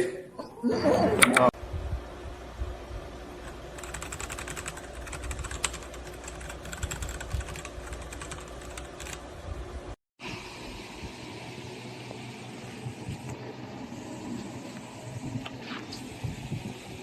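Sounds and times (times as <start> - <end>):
mechanical keyboard typing: 3.4 - 9.2.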